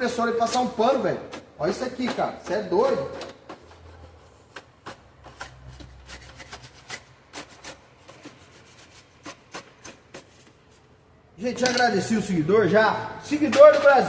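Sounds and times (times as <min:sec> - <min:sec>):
scraping and rubbing: 0:00.3 - 0:11.0.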